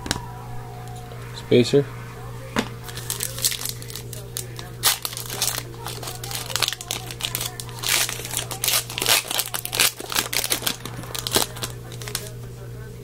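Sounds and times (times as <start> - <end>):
low hum: 0.0 - 12.6
wrapper crinkling and tearing: 2.9 - 12.4.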